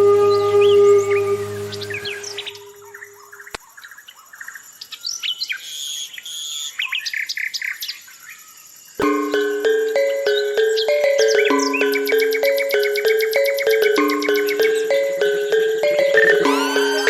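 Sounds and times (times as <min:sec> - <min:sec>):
small birds chirping: 0:01.9 - 0:17.0
melodic music: 0:09.0 - 0:17.0.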